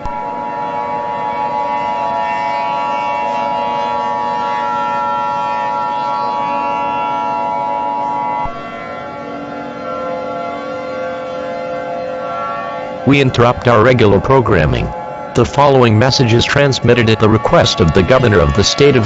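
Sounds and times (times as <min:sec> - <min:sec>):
steady droning background: 0:00.2 - 0:19.0
electronic alarm tone: 0:12.0 - 0:19.0.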